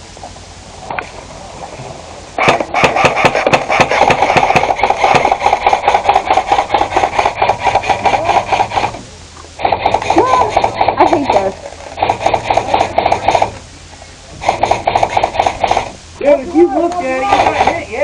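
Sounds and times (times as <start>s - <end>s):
airsoft gun firing automatic burst: 2.4s - 9.0s, 9.6s - 13.6s, 14.4s - 16.0s, 17.2s - 17.8s.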